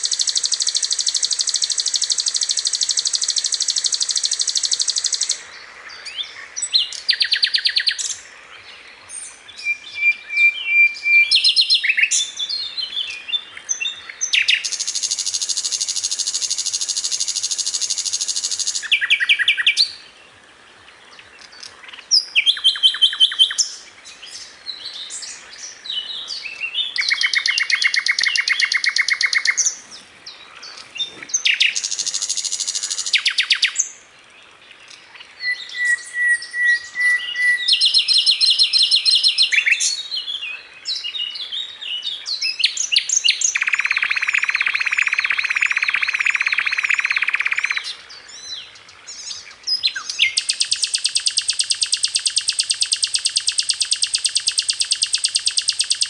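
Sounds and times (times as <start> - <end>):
flycatcher singing buzzy trills: 0.0 - 5.4, 42.8 - 47.9, 49.9 - 56.0.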